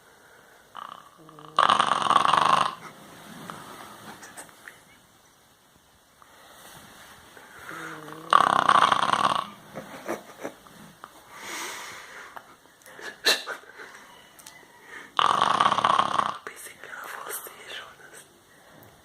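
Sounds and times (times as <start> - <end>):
dog snoring: 0.7 - 3.6, 7.7 - 9.6, 15.2 - 16.4.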